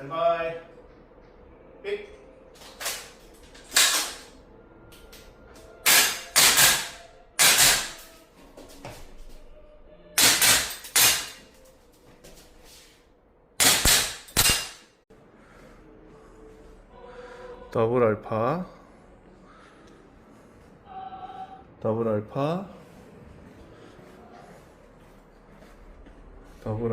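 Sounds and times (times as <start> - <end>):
airsoft rifle shots: 5.8 - 8.0, 10.2 - 11.4, 13.6 - 14.8.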